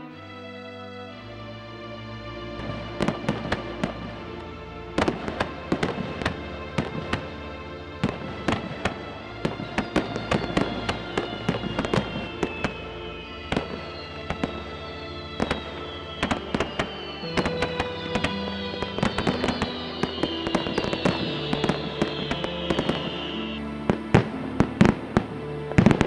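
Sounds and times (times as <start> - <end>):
background music: 0.0 - 26.0
fireworks whistling down: 2.6 - 7.3, 8.0 - 26.0
fireworks bangs and pops: 8.0 - 25.0.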